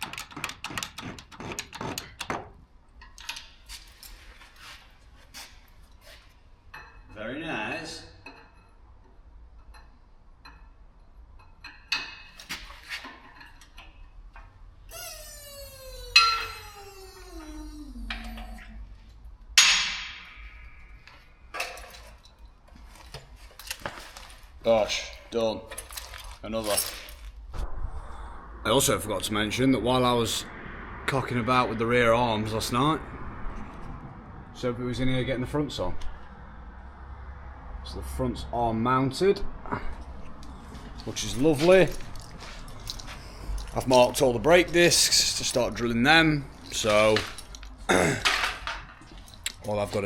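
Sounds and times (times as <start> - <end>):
falling ringing tone: 14.9 - 18.9
metal clanging and clinking: 21.5 - 22.6.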